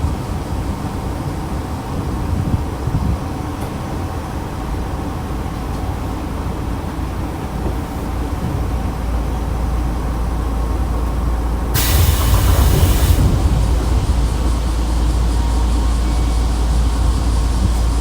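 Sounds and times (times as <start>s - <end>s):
train low rumble: 0.0s - 18.0s
compressed air hiss: 11.8s - 18.0s.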